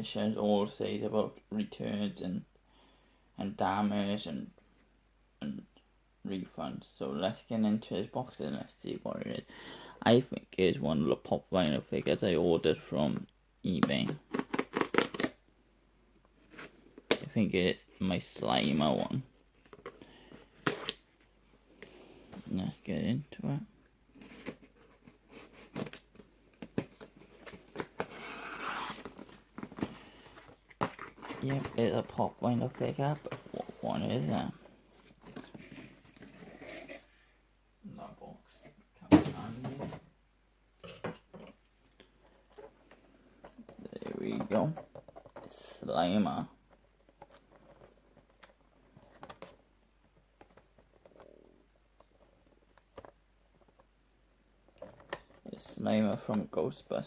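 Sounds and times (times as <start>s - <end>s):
cardboard tearing: 27.8s - 30.1s.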